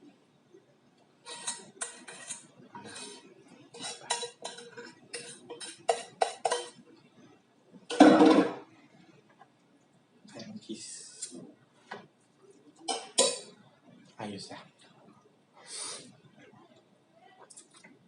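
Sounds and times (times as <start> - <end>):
cutlery clinking on a plate: 1.3 - 3.2, 3.8 - 6.8, 12.9 - 13.5.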